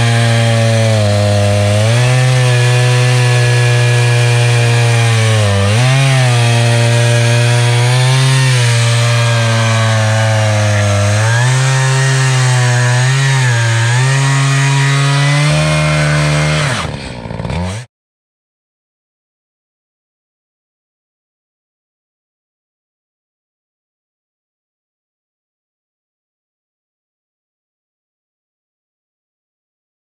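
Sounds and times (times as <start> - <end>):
chainsaw ripping a log: 0.0 - 17.9.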